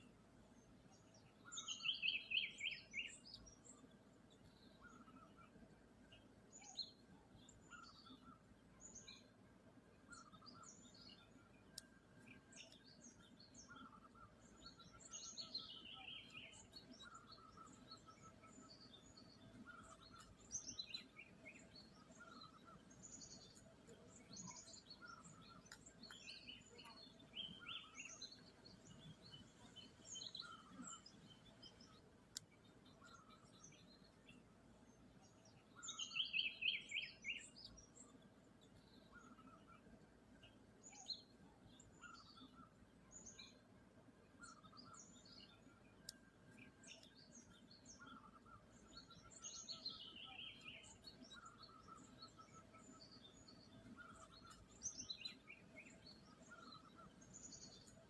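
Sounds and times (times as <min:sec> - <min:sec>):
wild birds chirping: 0:00.0 - 0:58.0.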